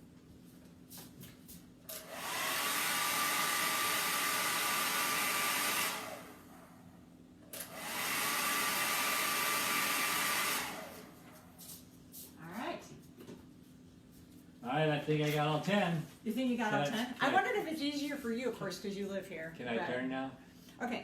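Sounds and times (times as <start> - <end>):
hair dryer whoosh and whine: 1.9 - 6.9, 7.6 - 11.7.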